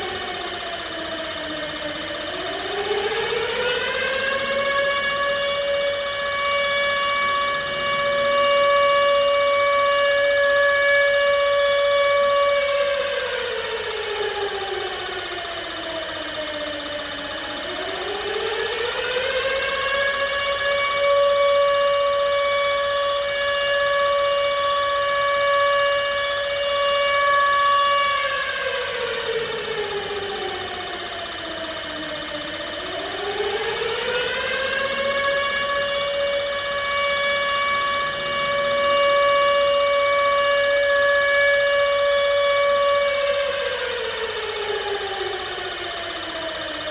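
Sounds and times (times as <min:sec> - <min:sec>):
air-raid siren: 0:00.0 - 0:46.9.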